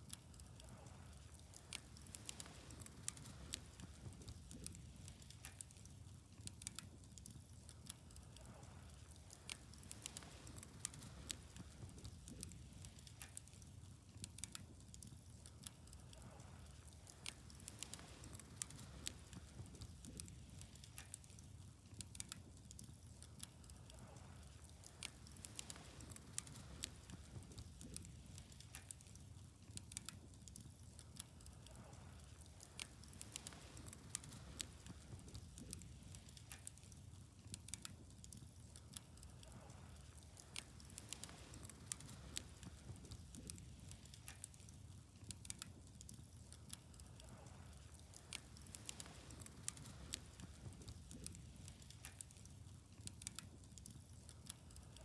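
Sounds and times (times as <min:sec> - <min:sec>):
faint low rumble: 0:00.0 - 0:55.0
wood fire crackling: 0:00.0 - 0:55.0.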